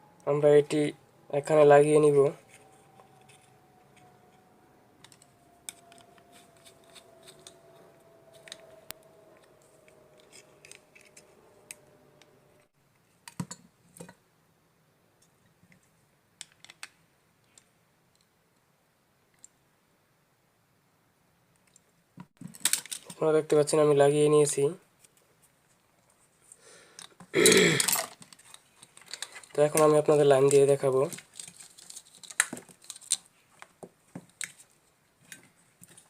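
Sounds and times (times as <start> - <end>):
faint steady hum: 0.0 - 36.0
small parts clicking and tapping: 5.0 - 12.3, 21.6 - 23.2, 26.9 - 36.0.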